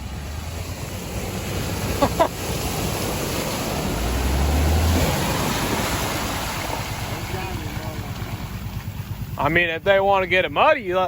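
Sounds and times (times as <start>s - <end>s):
vehicle engine rumbling: 0.0s - 11.0s.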